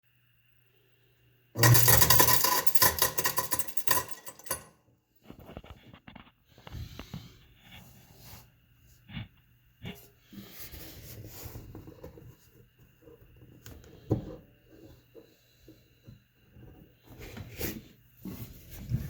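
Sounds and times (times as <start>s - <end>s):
garbage disposal rattling and knocking: 1.6s - 4.7s.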